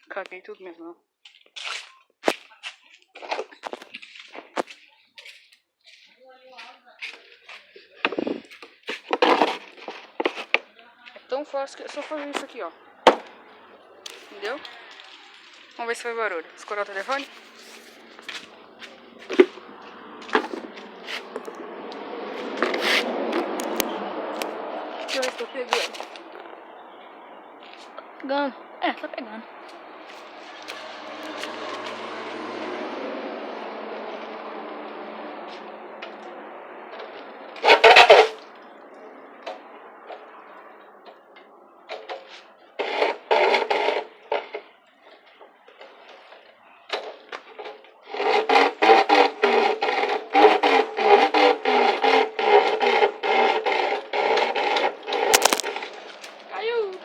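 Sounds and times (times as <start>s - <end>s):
wheel rushing noise: 7.2s - 57.0s
spokes clacking plastic bottle: 55.1s - 56.0s.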